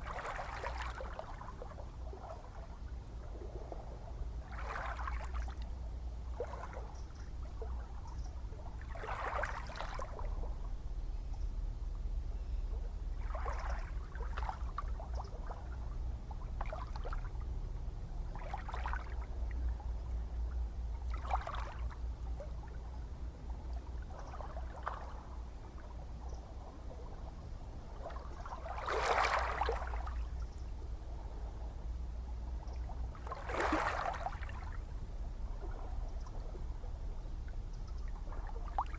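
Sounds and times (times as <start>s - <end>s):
ocean waves lapping and splashing: 0.0s - 10.9s, 12.9s - 37.3s, 38.0s - 38.9s
steady low rumble: 9.8s - 28.8s, 29.8s - 33.5s, 34.1s - 38.9s.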